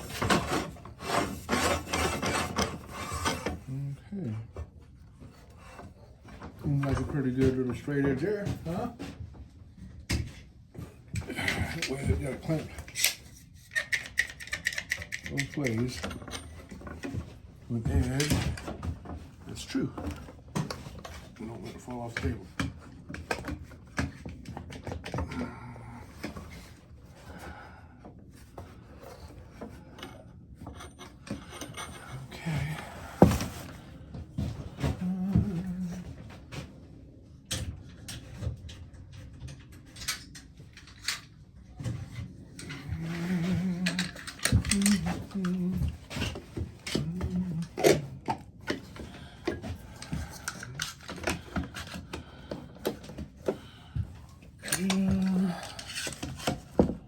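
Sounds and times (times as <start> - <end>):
rubbing on wood: 0.0 - 3.4
clamps clicking and knocking: 11.2 - 17.3, 42.6 - 52.2.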